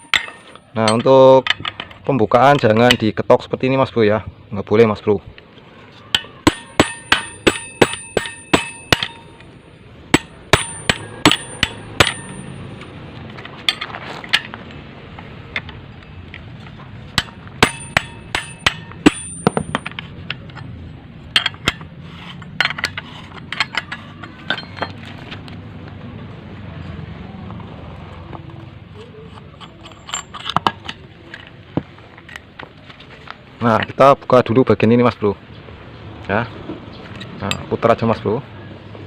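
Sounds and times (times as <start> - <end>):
hammer striking metal: 0.0 - 1.8, 6.1 - 13.0, 17.2 - 20.7.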